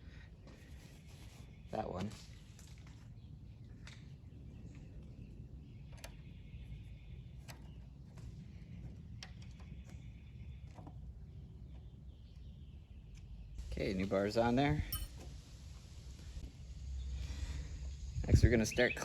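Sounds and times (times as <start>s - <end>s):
low steady hum: 9.2s - 18.4s
light clicks of tools handled: 14.9s - 15.2s.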